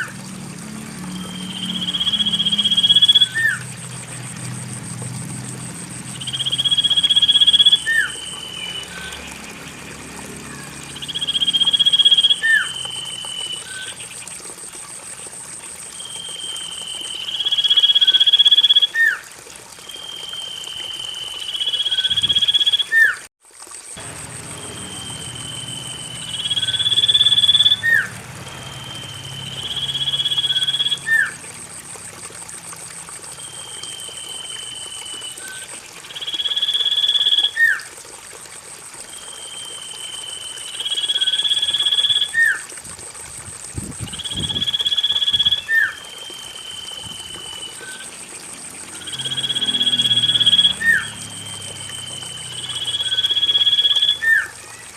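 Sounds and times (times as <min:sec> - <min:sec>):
bird whistling call: 0:01.1 - 0:03.6, 0:06.2 - 0:09.4, 0:10.5 - 0:14.2, 0:24.5 - 0:31.4, 0:33.5 - 0:37.8, 0:44.1 - 0:48.1, 0:48.9 - 0:54.9
steady high pulsing tone: 0:24.0 - 0:31.9.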